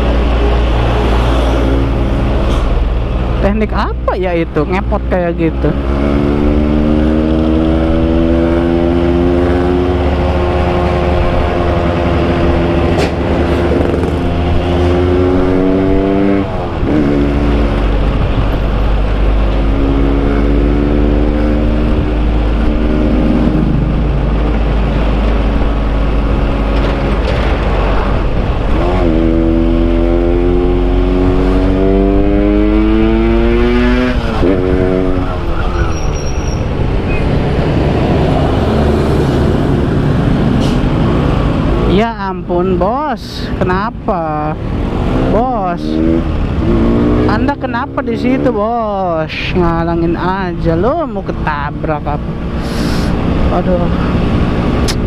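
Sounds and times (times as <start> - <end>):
wind rumble on microphone: 9.9 - 42.6.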